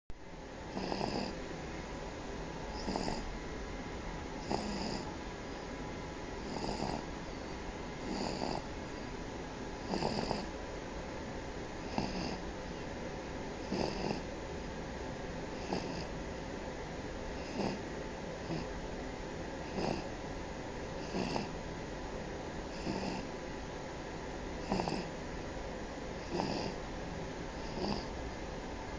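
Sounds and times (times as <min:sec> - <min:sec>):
baby snoring: 0:00.7 - 0:01.4, 0:02.7 - 0:03.3, 0:04.4 - 0:05.1, 0:06.4 - 0:07.1, 0:08.0 - 0:08.7, 0:09.8 - 0:10.5, 0:11.8 - 0:12.4, 0:13.6 - 0:14.2, 0:15.5 - 0:16.2, 0:17.4 - 0:17.8, 0:18.4 - 0:18.7, 0:19.6 - 0:20.1, 0:21.0 - 0:21.5, 0:22.7 - 0:23.3, 0:24.6 - 0:25.1, 0:26.2 - 0:26.8, 0:27.5 - 0:28.1.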